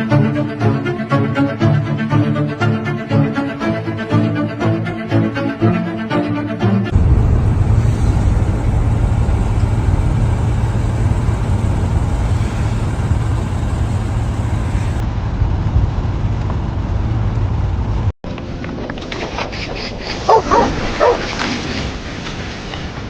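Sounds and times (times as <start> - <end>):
vehicle engine running: 6.9 - 18.1
road noise hiss: 7.0 - 15.3.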